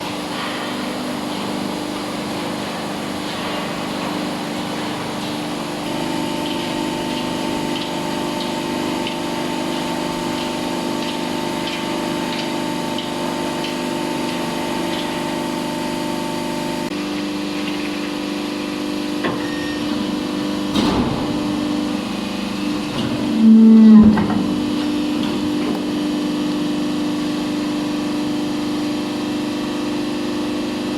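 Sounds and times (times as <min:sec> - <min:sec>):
baler machine humming: 0:05.0 - 0:17.1, 0:18.3 - 0:27.7
high-pitched whine: 0:23.1 - 0:24.8.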